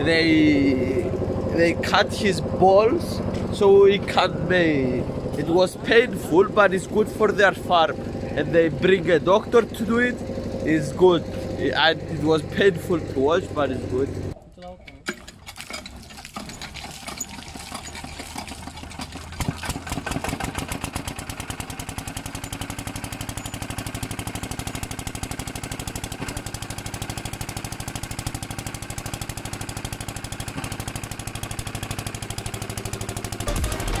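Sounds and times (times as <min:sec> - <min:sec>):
small engine running: 0:00.0 - 0:14.4, 0:16.2 - 0:34.0.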